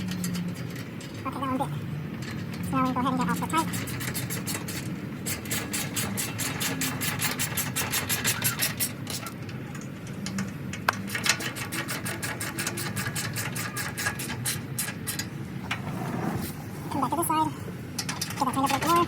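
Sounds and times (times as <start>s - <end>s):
hand ratchet clicking: 3.6s - 9.2s, 10.2s - 15.3s.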